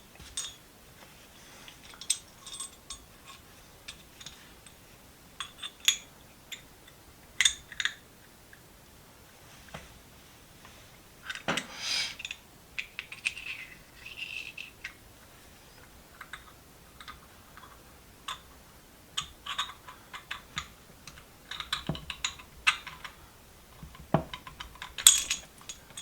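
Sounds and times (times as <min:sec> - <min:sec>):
ratchet parts clicking and clinking: 0:00.2 - 0:00.6, 0:01.8 - 0:04.8, 0:11.2 - 0:15.0, 0:24.3 - 0:26.0.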